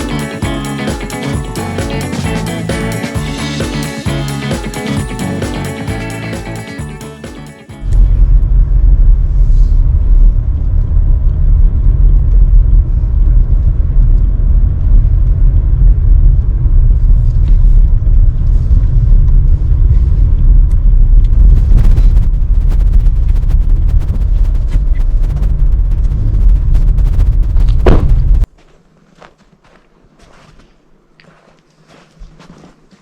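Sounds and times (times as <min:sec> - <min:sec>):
loud low rumble: 0:07.8 - 0:28.5.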